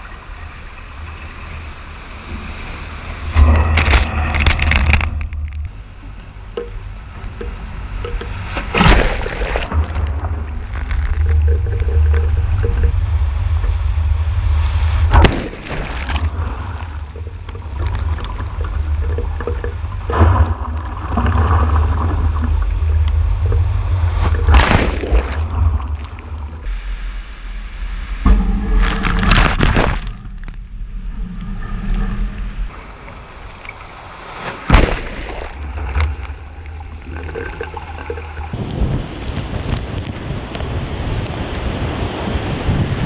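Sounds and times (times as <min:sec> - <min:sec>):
waves crashing on rocks: 0:38.5 - 0:43.0
wind buffeting microphone: 0:38.5 - 0:43.0.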